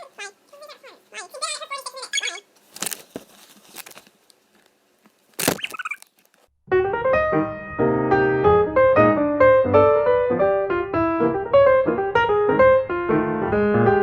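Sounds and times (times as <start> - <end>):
piano music: 6.7 - 14.0.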